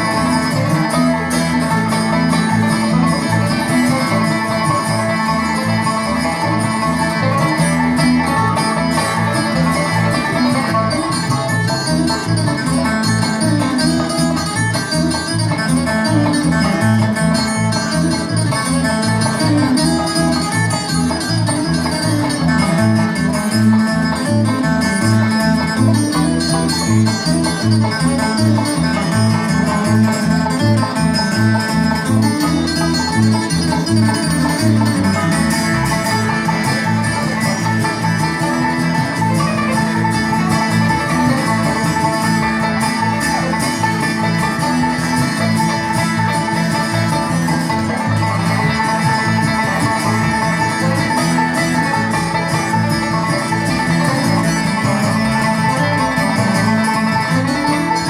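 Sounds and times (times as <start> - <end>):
bluegrass banjo and guitar music: 0.0 - 58.0.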